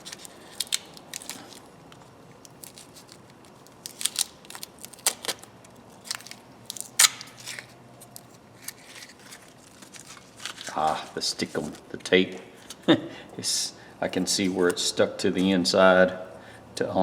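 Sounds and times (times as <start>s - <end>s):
masking tape peeling and crumpling: 0.0s - 12.0s.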